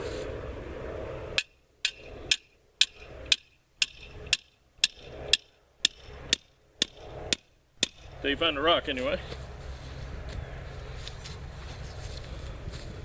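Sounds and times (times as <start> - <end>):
hammer striking steel: 1.4 - 8.2.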